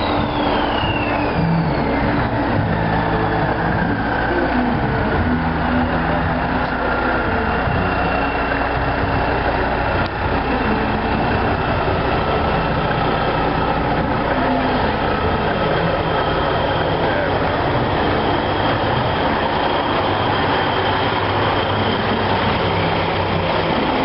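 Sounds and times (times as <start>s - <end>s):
diesel truck engine running: 0.0s - 24.0s.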